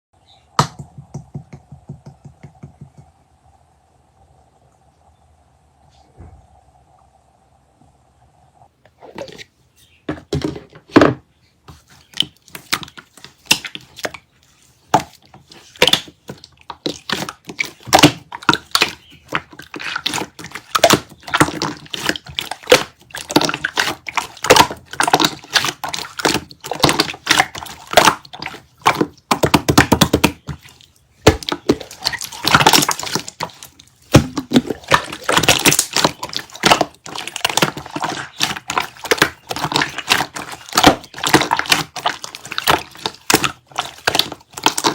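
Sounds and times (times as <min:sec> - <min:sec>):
slime squished by hand: 0:14.9 - 0:44.9.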